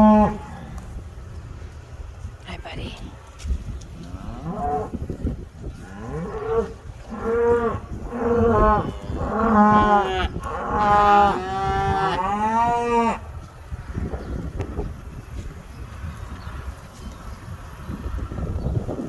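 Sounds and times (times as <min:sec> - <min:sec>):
cattle mooing: 0:00.0 - 0:00.7, 0:05.8 - 0:13.2.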